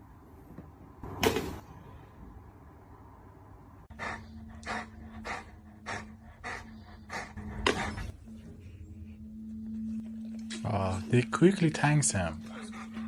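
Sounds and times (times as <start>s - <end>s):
faint steady hum: 0.0s - 13.0s
dog breathing heavily: 3.9s - 9.0s, 12.4s - 13.0s.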